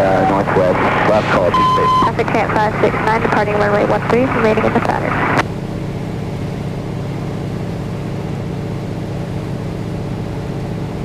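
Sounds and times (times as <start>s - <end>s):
radio call: 0.0s - 5.4s
radial aircraft engine droning: 0.0s - 11.0s.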